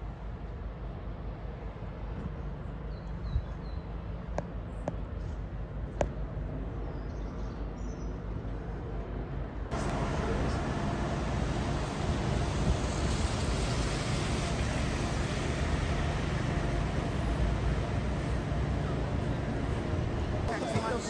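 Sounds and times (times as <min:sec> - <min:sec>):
low outdoor rumble: 0:08.4 - 0:21.0.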